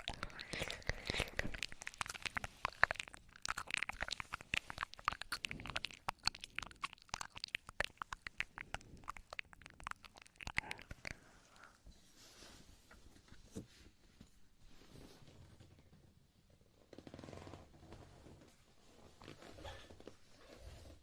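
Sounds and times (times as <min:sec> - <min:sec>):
wet mouth clicks and lip smacks: 0:00.0 - 0:11.3.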